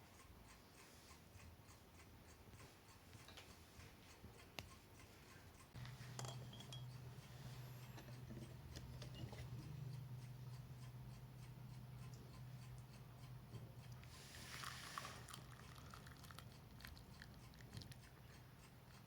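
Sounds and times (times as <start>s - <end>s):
faint clicks and clinks: 5.7s - 10.6s
low steady hum: 5.8s - 14.7s.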